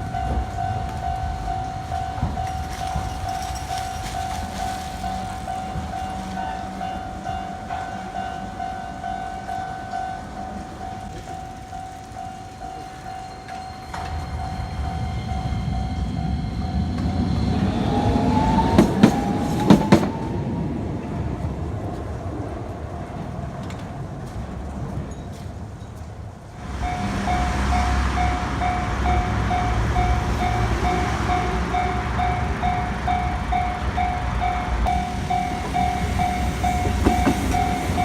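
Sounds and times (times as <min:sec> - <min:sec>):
train wheels clacking on rail joints: 0:00.0 - 0:20.3, 0:23.6 - 0:38.0
level-crossing warning bell: 0:00.0 - 0:20.4, 0:26.6 - 0:38.0
train rumbling past: 0:00.0 - 0:38.0.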